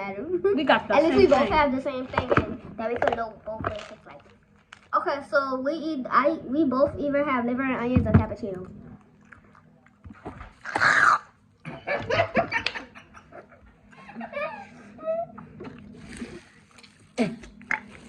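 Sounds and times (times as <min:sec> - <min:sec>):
girls laughing: 0:11.7 - 0:15.3.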